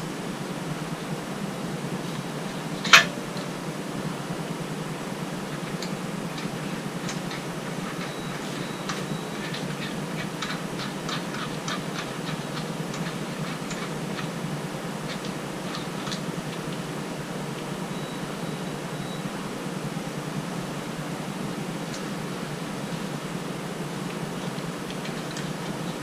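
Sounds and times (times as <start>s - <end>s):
fan hum: 0.0s - 26.0s
metallic clicks of engine parts: 2.8s - 3.2s.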